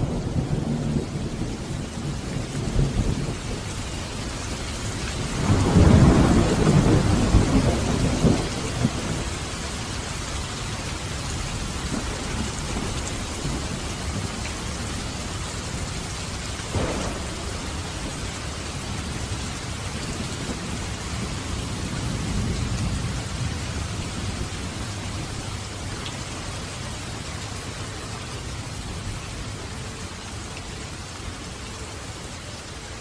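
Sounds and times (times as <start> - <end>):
thunder rumbling: 0.0 - 10.0, 11.0 - 29.8
heavy rain: 0.0 - 33.0
thunder crack: 16.7 - 19.2.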